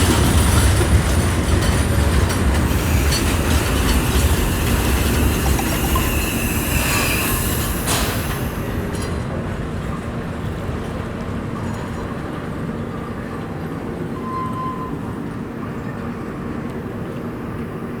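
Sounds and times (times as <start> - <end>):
train wheels rumbling on rails: 0.0 - 18.0
wheel squeal: 2.3 - 8.9, 14.1 - 15.1.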